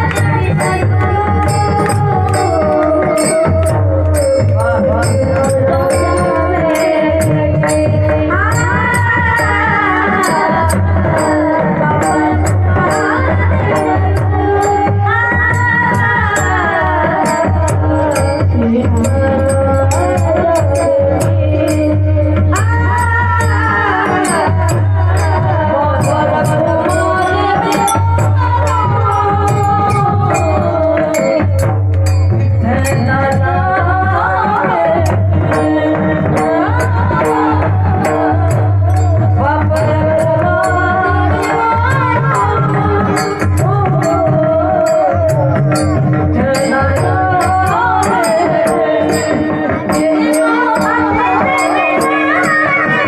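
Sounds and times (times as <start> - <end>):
person singing: 0.0 - 31.7
high metallic percussion ticking: 0.0 - 53.0
tabla beats: 0.0 - 53.0.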